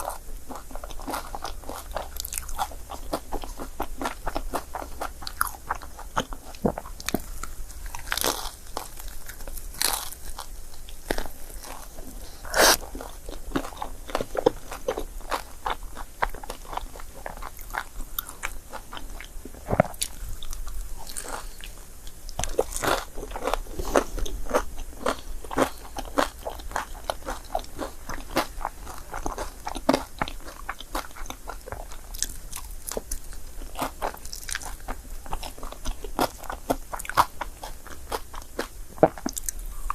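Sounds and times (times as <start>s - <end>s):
chewing and biting food: 0.0s - 39.9s.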